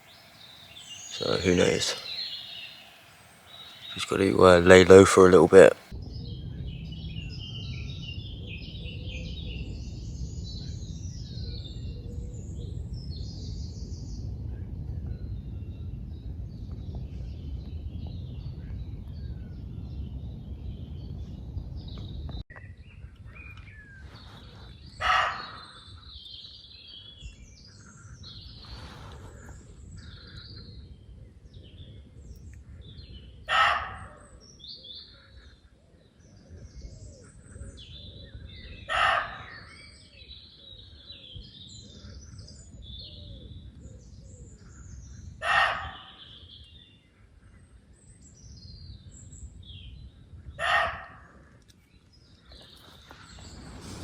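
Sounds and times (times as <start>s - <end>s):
birds chirping and singing: 0.0s - 14.0s, 21.9s - 51.2s, 51.9s - 54.0s.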